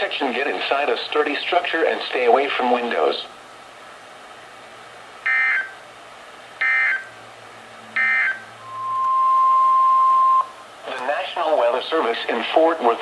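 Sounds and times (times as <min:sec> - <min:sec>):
steady alert tone: 0:07.8 - 0:10.6.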